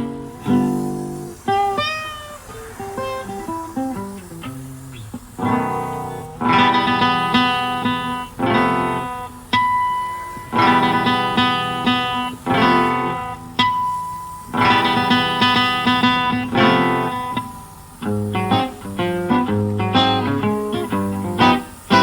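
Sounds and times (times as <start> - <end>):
guitar chords plucked and strummed: 0.0 - 22.0.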